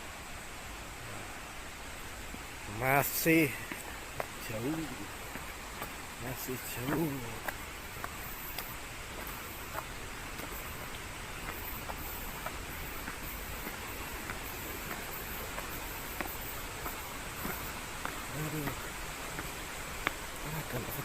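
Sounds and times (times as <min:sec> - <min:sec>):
rushing outdoor hiss: 0:00.0 - 0:21.0
footsteps on stone stairs: 0:02.2 - 0:21.0.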